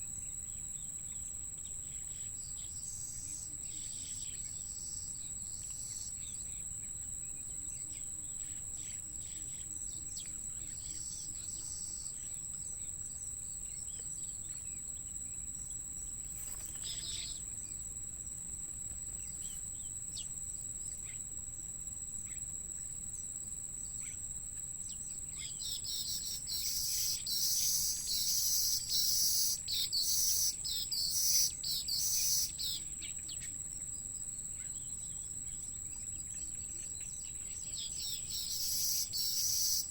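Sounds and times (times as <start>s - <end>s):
insect trill: 0.0s - 39.9s
birds chirping: 13.6s - 17.8s, 37.0s - 39.9s.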